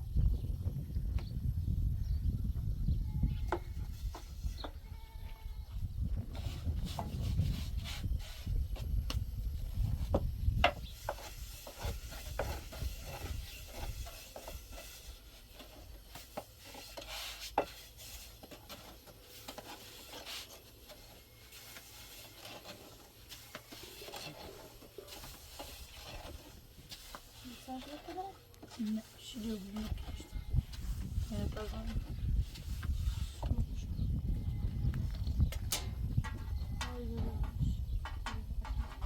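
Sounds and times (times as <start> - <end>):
faint scraping: 10.9 - 39.0.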